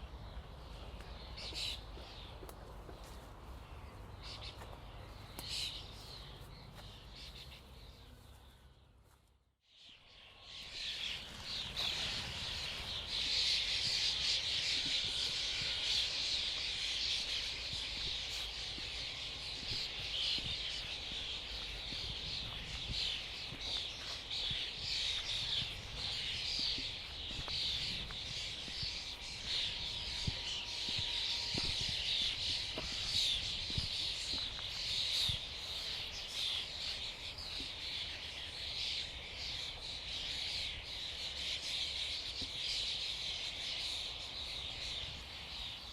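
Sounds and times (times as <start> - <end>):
starling flock chattering: 10.6 - 44.6.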